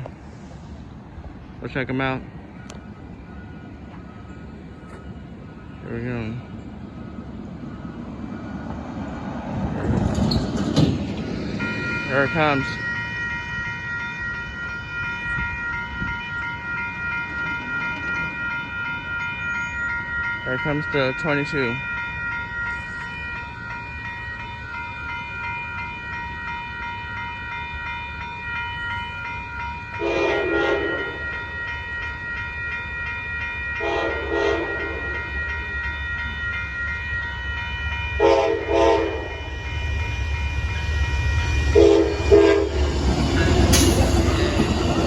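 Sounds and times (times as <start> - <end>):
train rumble: 0.0 - 45.0
crossing bells ringing: 1.2 - 45.0
train horn blasts: 30.0 - 31.4, 33.8 - 35.3, 38.2 - 39.4, 41.7 - 44.0.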